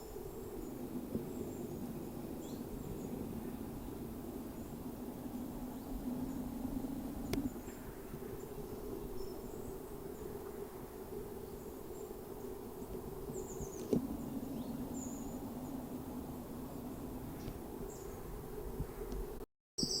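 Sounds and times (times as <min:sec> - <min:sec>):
steady low hum: 0:00.0 - 0:19.4
faint bird chirps: 0:19.8 - 0:20.0.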